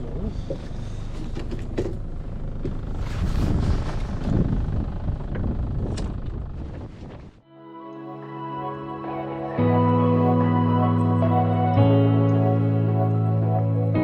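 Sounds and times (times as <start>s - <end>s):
wind buffeting microphone: 3.0s - 7.4s.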